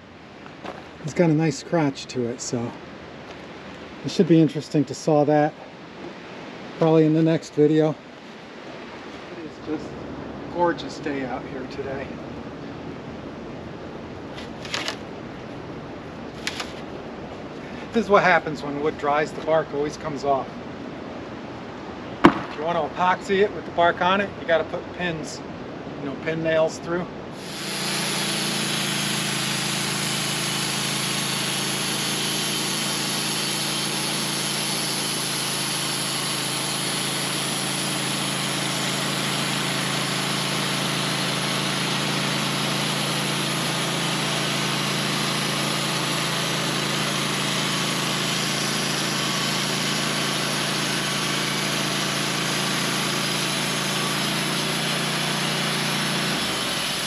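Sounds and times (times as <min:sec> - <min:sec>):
sawmill engine humming: 0:27.3 - 0:57.0.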